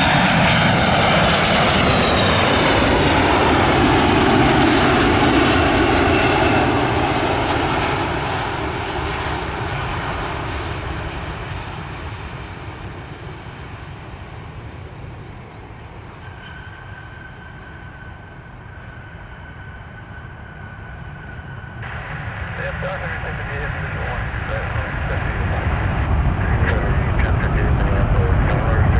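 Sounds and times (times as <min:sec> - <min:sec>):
jet engines roaring: 0:00.0 - 0:28.9
faint high whine: 0:13.8 - 0:28.9.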